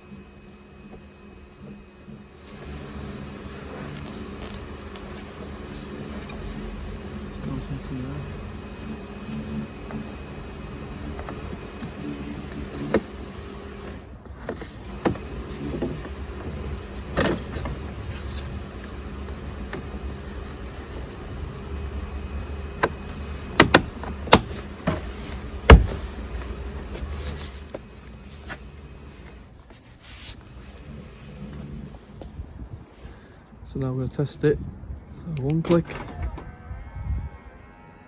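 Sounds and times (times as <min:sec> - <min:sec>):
steady low hum: 0:00.0 - 0:35.3
knocks and clicks on car door: 0:22.8 - 0:25.0, 0:25.6 - 0:26.1.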